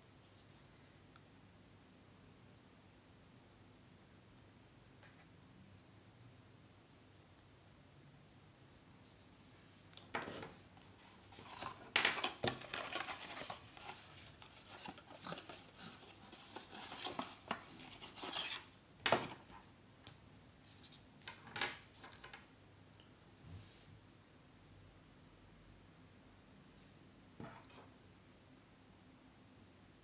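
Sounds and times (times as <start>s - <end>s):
packaging rubbed and scraped: 11.0s - 18.7s.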